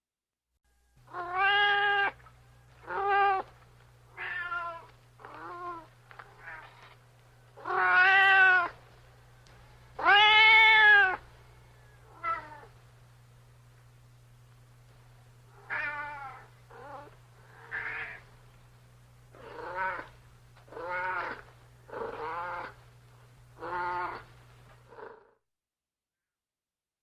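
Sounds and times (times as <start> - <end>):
faint low hum: 0.7 - 25.4
cat meowing: 1.1 - 2.2, 2.8 - 3.5, 4.1 - 6.8, 7.6 - 8.8, 10.0 - 11.2, 12.1 - 12.7, 15.6 - 18.2, 19.4 - 20.1, 20.7 - 21.4, 22.0 - 22.8, 23.6 - 24.3.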